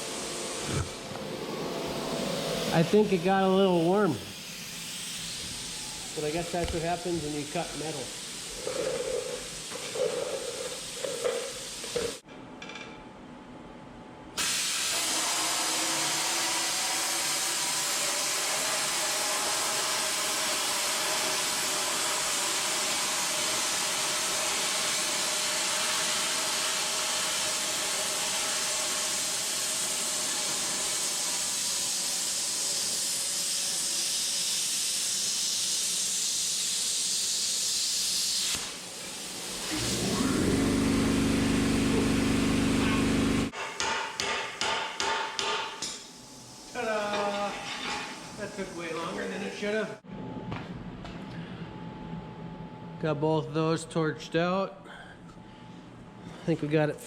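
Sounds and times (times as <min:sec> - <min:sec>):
cutting torch hissing: 0:00.0 - 0:12.2, 0:14.4 - 0:43.6.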